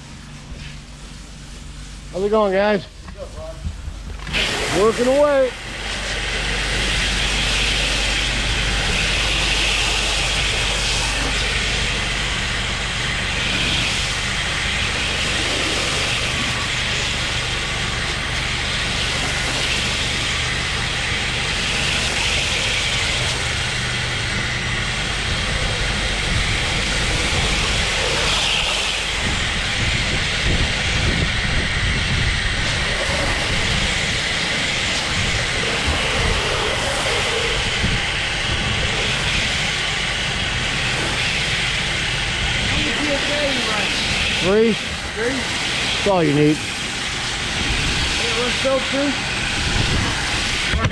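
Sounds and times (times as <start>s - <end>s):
low engine drone: 0.0s - 50.9s
pressure washer spray hissing: 0.4s - 50.8s.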